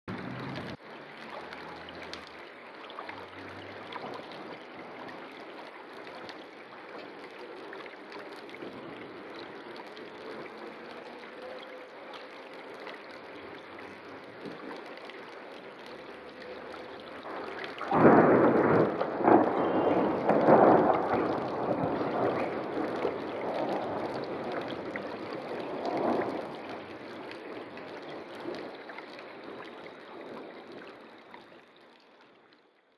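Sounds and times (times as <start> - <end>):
rolling thunderclap: 17.2 - 28.8.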